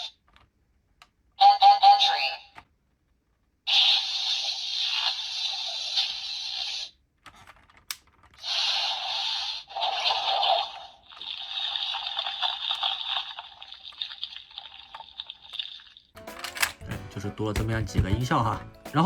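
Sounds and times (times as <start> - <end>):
toy electronic sound effects: 1.4 - 2.6, 3.7 - 7.0, 8.4 - 14.4.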